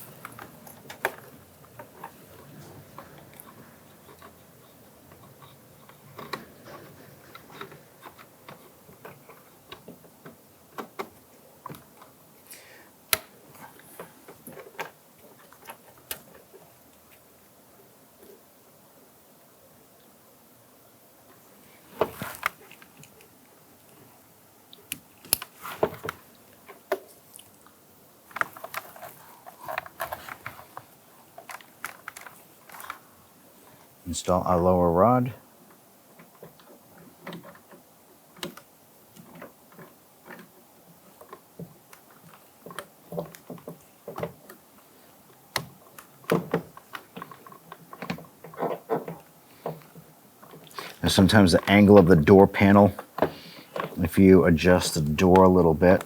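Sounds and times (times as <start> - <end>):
plastic clicks and rattles: 0.2 - 12.2, 28.3 - 33.1, 36.1 - 44.6, 45.3 - 51.0.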